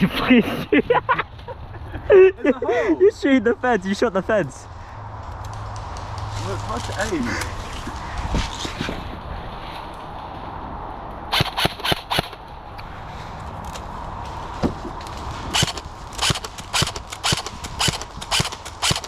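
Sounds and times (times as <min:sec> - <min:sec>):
airsoft gun shots: 0:11.3 - 0:12.4, 0:15.6 - 0:19.0.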